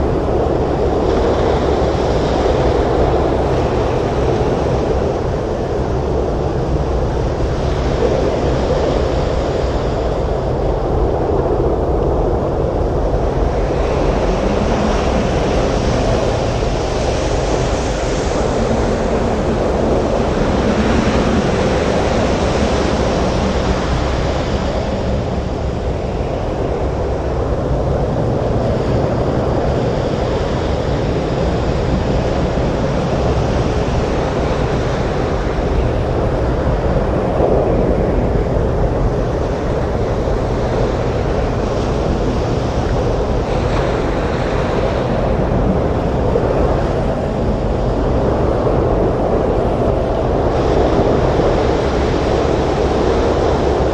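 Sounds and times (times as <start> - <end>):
waves breaking on beach: 0.0 - 53.9
wind: 0.0 - 53.9.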